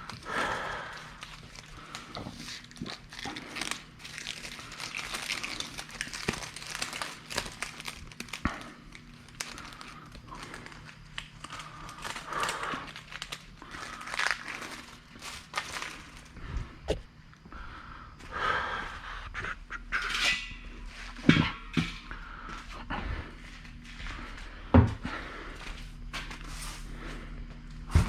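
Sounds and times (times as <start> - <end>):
packaging crinkling: 0.0 - 16.4.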